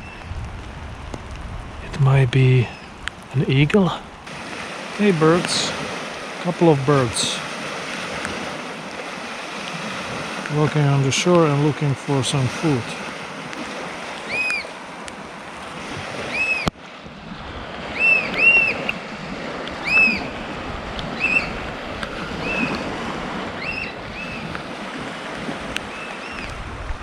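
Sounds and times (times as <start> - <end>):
surf: 0.0 - 27.0
wind: 0.0 - 27.0
bird calling: 2.5 - 10.5, 12.3 - 14.9, 16.1 - 16.8, 17.8 - 19.0, 19.7 - 26.6.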